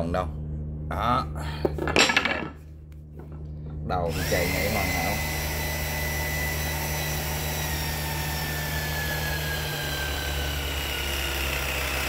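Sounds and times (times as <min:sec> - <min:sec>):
hydraulic pump humming and whining: 0:03.1 - 0:12.0.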